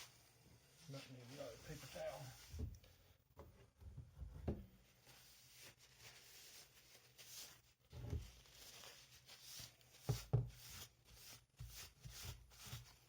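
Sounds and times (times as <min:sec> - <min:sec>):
rubbing and scraping strokes: 0:00.0 - 0:02.6.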